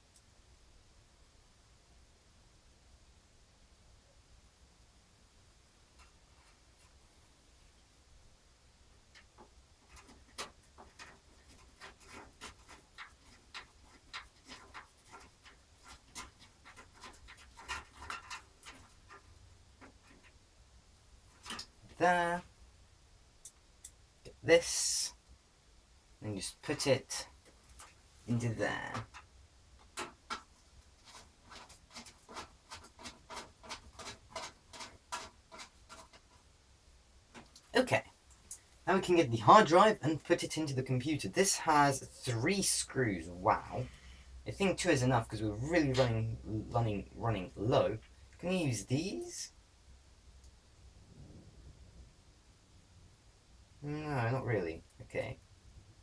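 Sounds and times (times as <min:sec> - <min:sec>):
computer parts clicking and tapping: 0:28.8 - 0:36.4.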